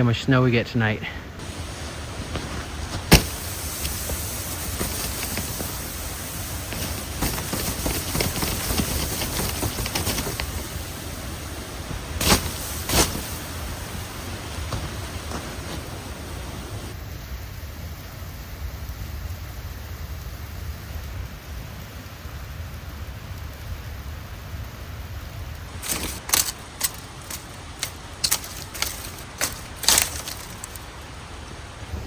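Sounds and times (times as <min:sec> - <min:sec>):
low outdoor rumble: 0:00.0 - 0:17.0
sharp crunching sounds: 0:01.4 - 0:17.0, 0:25.7 - 0:31.1.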